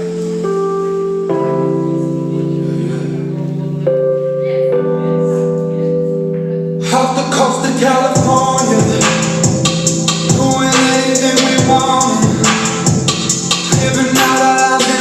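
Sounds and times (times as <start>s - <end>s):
held keyboard chords: 0.0s - 15.0s
dance music beat: 6.3s - 15.0s.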